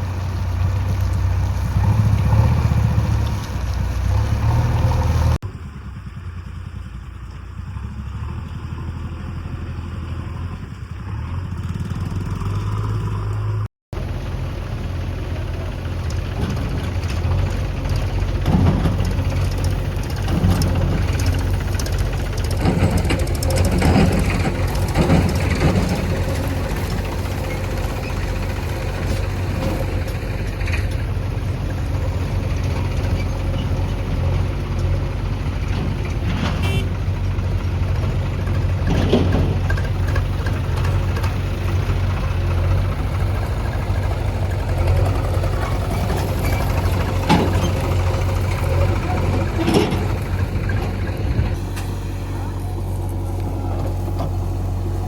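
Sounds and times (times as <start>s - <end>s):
heavy diesel engine droning: 0.0s - 55.0s
bursts of clatter: 15.8s - 31.2s.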